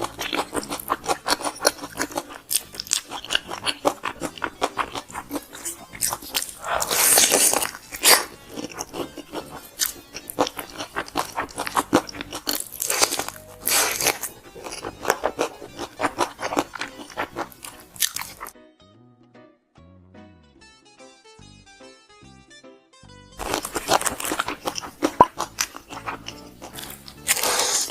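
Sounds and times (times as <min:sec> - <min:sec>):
crunching and chewing fried chicken: 0:00.0 - 0:18.6, 0:23.4 - 0:27.9
soft piano music: 0:13.3 - 0:15.8, 0:17.6 - 0:23.4.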